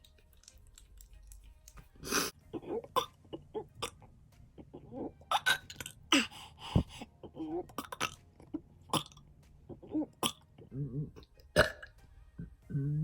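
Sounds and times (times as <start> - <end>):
person burping: 2.0 - 6.3, 7.2 - 13.0.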